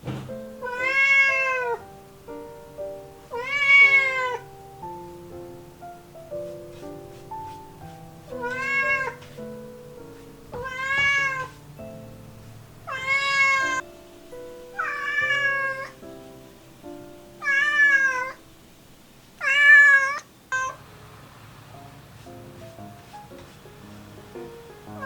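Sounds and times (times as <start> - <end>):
background music: 0.1 - 18.8, 21.0 - 25.0
young cat meowing: 0.6 - 1.8, 3.3 - 4.5, 8.4 - 9.2, 10.6 - 11.6, 12.9 - 13.8, 14.8 - 16.0, 17.4 - 18.4, 19.4 - 20.8.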